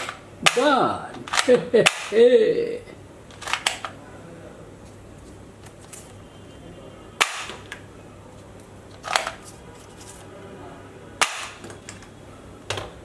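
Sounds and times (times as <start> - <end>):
toy gun cracks: 0.0 - 0.7, 1.3 - 2.2, 3.4 - 3.9, 7.2 - 7.6, 11.2 - 11.6.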